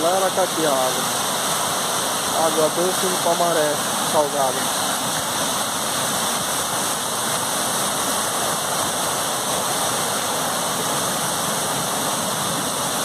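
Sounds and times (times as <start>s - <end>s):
river water pouring over dam: 0.0s - 13.0s.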